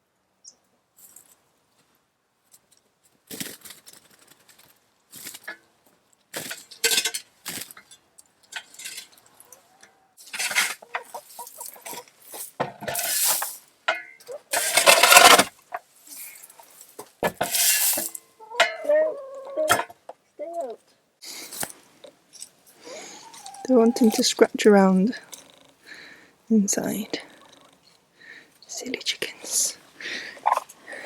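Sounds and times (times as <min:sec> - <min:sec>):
coop floor litter being scraped: 0:10.2 - 0:13.6, 0:17.4 - 0:18.2.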